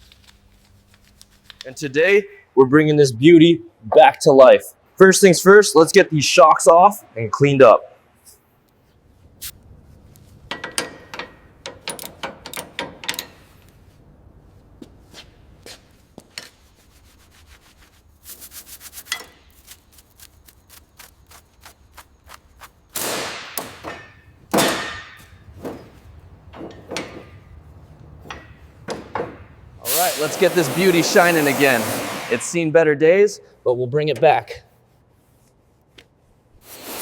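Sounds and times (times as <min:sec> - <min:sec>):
metal tools clicking and knocking: 0:10.5 - 0:13.4
short hiss: 0:29.8 - 0:32.6, 0:36.6 - 0:37.0.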